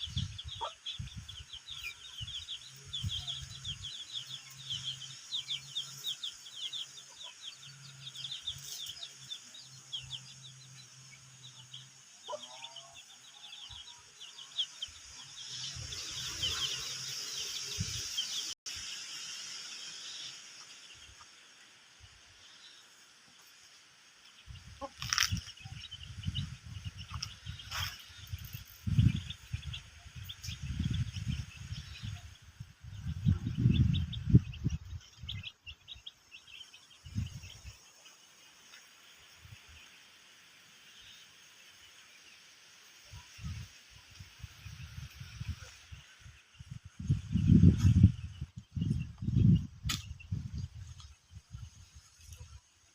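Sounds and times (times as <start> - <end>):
chickens clucking: 24.5 - 29.3.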